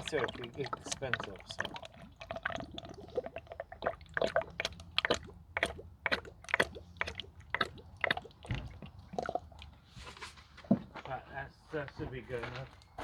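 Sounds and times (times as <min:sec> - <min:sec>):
liquid gurgling through funnel: 0:00.0 - 0:10.2.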